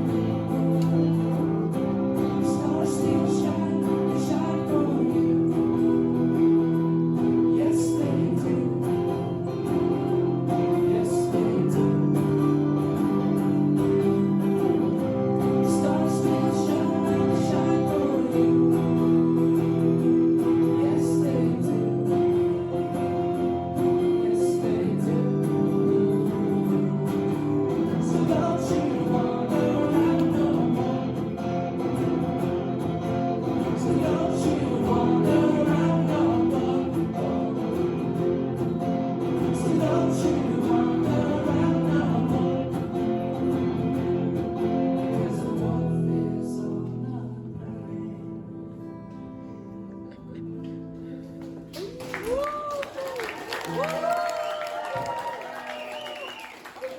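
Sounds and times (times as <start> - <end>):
live band music with guitar: 0.0 - 52.0.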